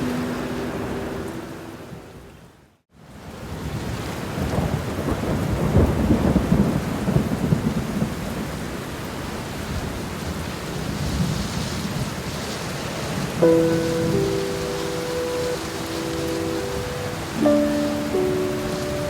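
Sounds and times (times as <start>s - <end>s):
steady rain: 0.0s - 19.0s
thunder rumbling: 13.4s - 19.0s.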